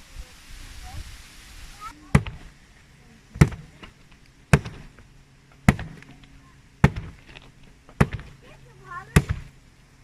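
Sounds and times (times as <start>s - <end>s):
axe chopping log: 2.1s - 2.5s, 3.4s - 5.0s, 5.6s - 6.1s, 6.8s - 8.4s, 9.1s - 9.6s.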